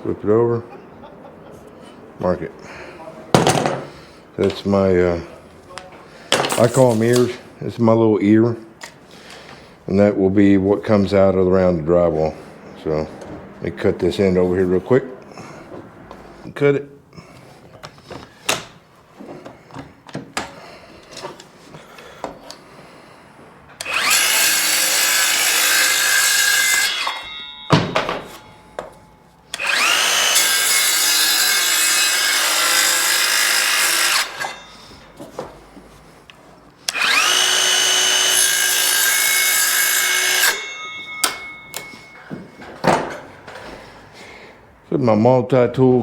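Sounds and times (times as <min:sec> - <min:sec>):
power saw cutting plastic board: 0:23.8 - 0:28.5, 0:29.5 - 0:35.0, 0:36.8 - 0:42.2.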